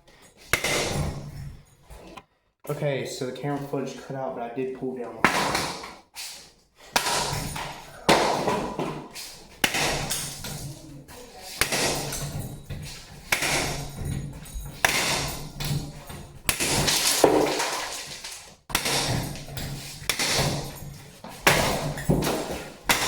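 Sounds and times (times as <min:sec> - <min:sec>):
ceiling fan being smashed: 0:00.5 - 0:01.3, 0:06.9 - 0:23.0.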